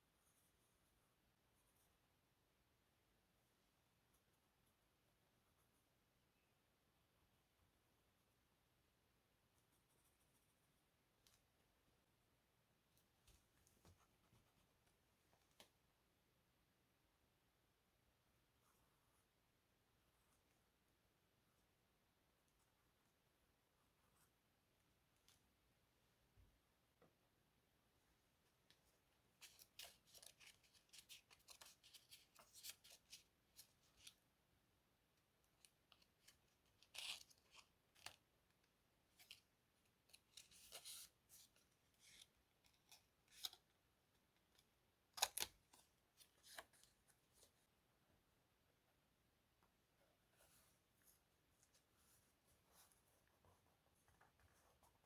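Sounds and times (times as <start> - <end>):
faint soft scratches: 49.6 - 55.0.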